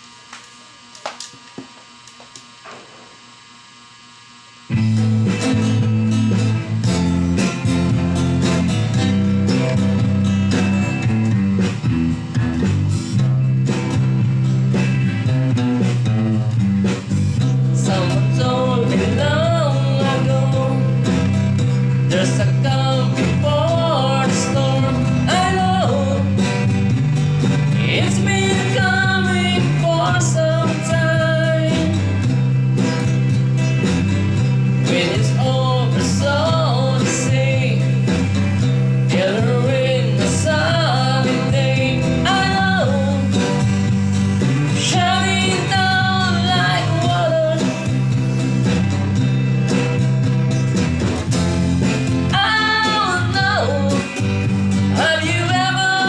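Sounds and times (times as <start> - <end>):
rock song with strummed guitar: 4.7 - 56.0
person singing: 17.6 - 21.4, 22.0 - 26.5, 27.7 - 32.2, 34.7 - 43.6, 44.4 - 48.1, 52.2 - 56.0.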